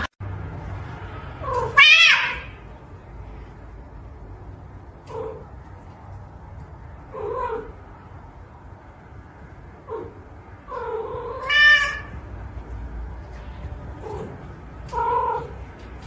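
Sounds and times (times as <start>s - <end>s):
cat meowing: 1.4s - 2.6s, 9.9s - 12.2s, 14.0s - 15.7s.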